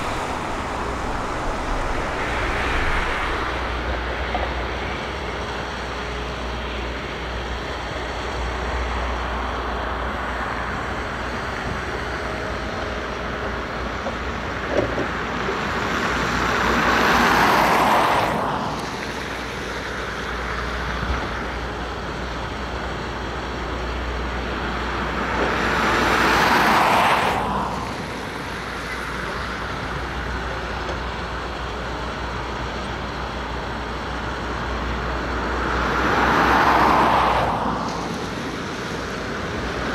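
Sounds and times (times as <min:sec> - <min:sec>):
vehicle passing by close: 0:00.0 - 0:06.3, 0:35.3 - 0:39.9
road vehicle engine noise: 0:00.0 - 0:39.9.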